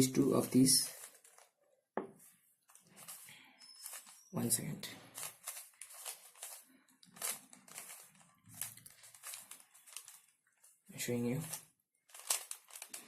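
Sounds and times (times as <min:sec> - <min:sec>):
plastic puzzle cube clicking: 0:05.2 - 0:10.2, 0:11.4 - 0:13.0.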